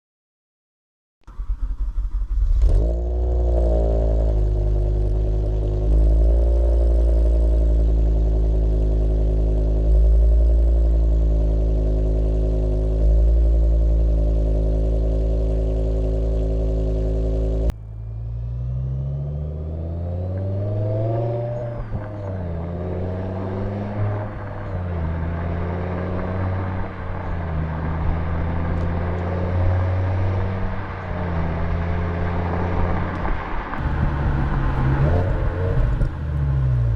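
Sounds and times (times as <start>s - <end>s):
car engine idling: 1.3s - 19.4s, 33.1s - 36.9s
engine revving at low revs: 1.3s - 36.9s.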